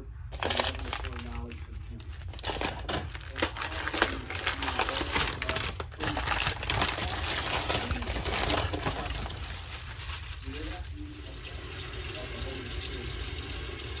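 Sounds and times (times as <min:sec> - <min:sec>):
food packaging crinkling: 0:00.3 - 0:11.2.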